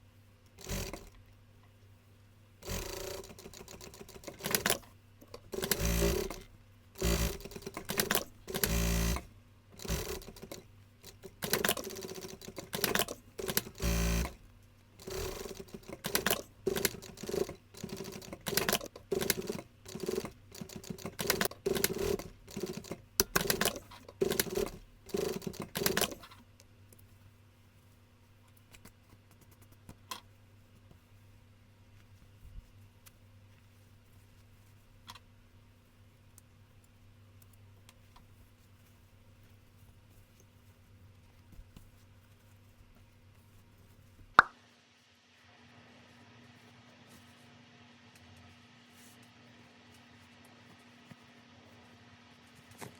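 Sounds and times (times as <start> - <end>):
sewing machine running: 0.6 - 1.1, 2.6 - 4.8, 5.5 - 6.4, 7.0 - 10.6, 11.4 - 14.4, 15.0 - 26.2.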